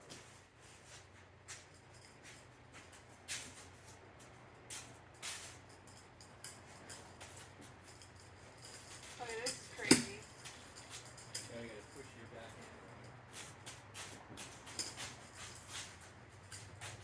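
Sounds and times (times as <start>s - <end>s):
faint scuffs and scrapes: 0.0s - 5.8s, 12.6s - 17.0s.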